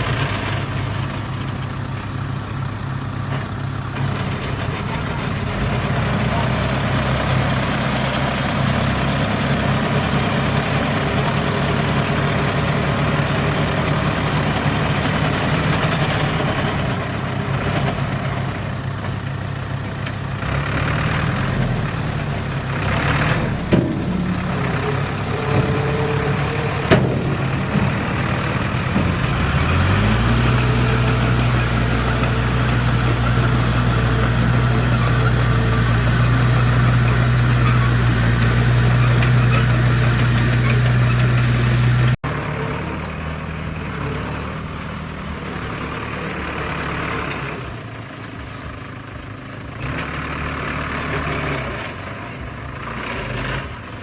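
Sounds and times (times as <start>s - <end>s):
diesel engine running: 0.0s - 54.0s
sharp metallic knocks: 23.4s - 33.7s.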